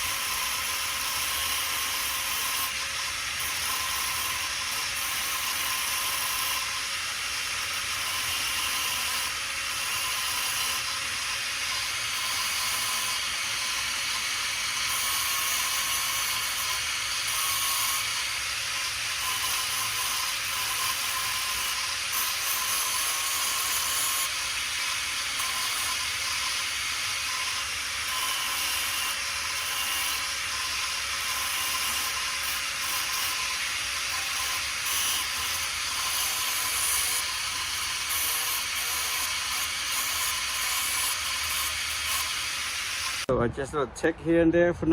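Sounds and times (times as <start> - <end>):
welding arc crackling and hissing: 3.4 - 43.3.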